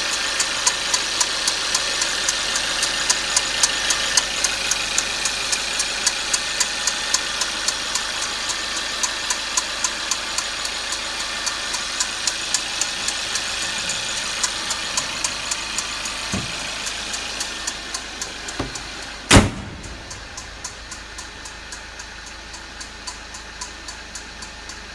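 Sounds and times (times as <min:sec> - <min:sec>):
engine ticking: 0:00.0 - 0:24.9
car engine running: 0:10.4 - 0:24.9
loud thump: 0:16.2 - 0:17.2, 0:18.6 - 0:21.0.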